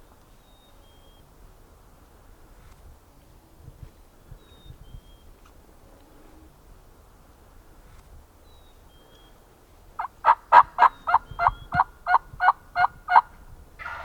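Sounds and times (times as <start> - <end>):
wild turkey yelps: 10.0 - 14.0.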